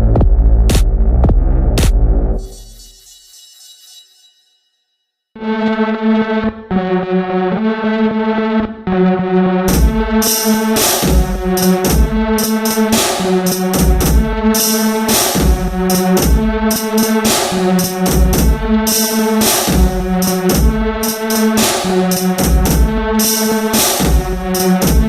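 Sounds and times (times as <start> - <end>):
electronic music with drum beat: 0.0 - 4.2, 9.7 - 25.0.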